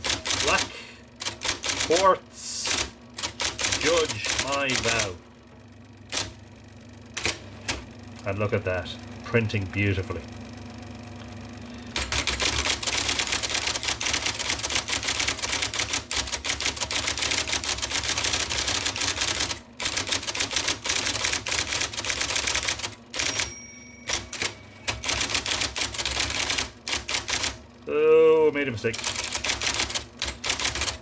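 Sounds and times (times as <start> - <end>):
typewriter keys clacking: 0.0 - 2.0, 2.7 - 5.1, 12.0 - 23.5, 24.1 - 27.6, 29.0 - 31.0
typewriter motor whirring: 0.0 - 5.2, 6.1 - 6.4, 7.2 - 7.9, 12.0 - 23.5, 24.1 - 27.6, 28.8 - 31.0.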